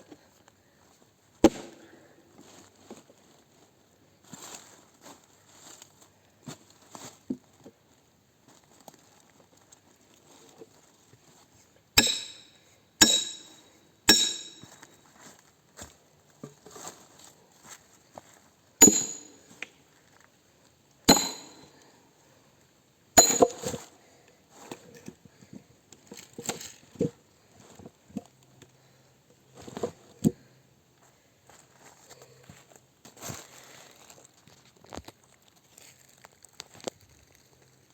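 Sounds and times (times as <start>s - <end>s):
hammer striking axe: 12.0s - 14.9s, 18.8s - 19.4s, 21.1s - 21.7s, 23.2s - 23.7s
light knocks and clinks: 23.2s - 23.8s.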